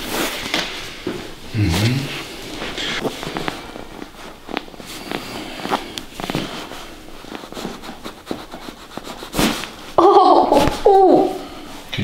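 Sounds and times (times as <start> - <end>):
handling of a body: 0.0 - 8.0.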